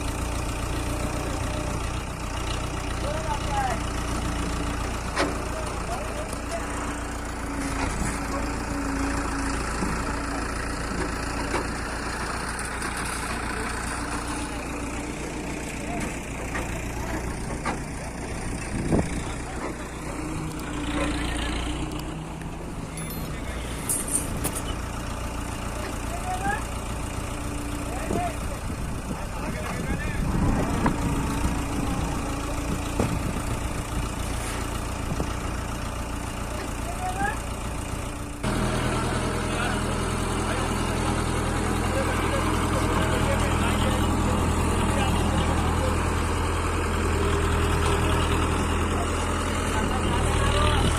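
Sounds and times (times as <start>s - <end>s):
diesel engine running: 0.0s - 50.9s
held tone: 22.8s - 24.7s.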